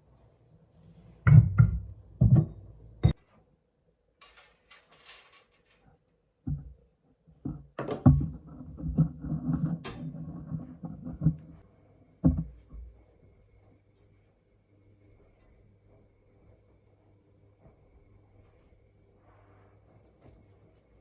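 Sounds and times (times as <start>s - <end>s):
knocks and clatter of objects: 1.3s - 3.2s, 7.4s - 11.6s, 12.2s - 12.9s.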